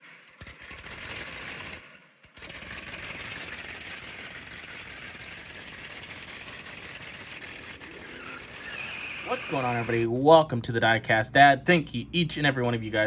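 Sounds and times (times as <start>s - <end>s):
rattling engine running: 0.0s - 10.1s.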